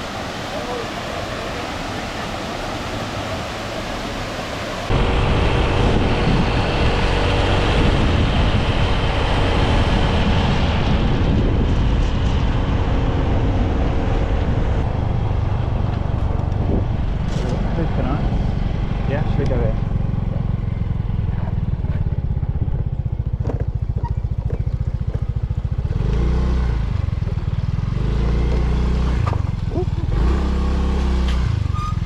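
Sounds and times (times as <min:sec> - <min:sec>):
waterfall rushing: 0:00.0 - 0:10.2
wind buffeting microphone: 0:04.9 - 0:26.1
motor scooter running: 0:18.8 - 0:30.8.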